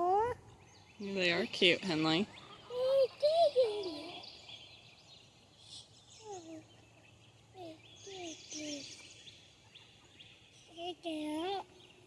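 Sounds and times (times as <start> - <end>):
small birds chirping: 0.1 - 12.0
chickens calling: 1.9 - 4.6.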